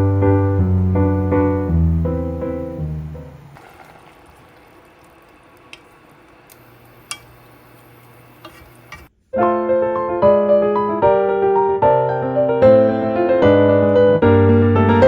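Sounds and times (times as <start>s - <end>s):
piano background music: 0.0s - 3.5s, 9.4s - 15.0s.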